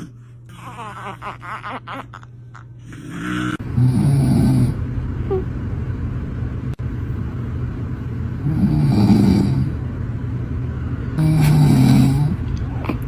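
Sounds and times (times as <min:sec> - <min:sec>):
man snoring loudly: 0:02.9 - 0:04.8, 0:08.4 - 0:09.8, 0:11.2 - 0:12.4
steady low rumble: 0:03.5 - 0:13.0.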